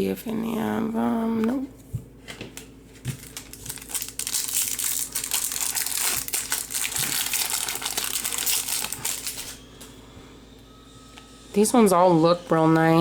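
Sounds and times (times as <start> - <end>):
foil wrapper crinkling: 3.0 - 9.6.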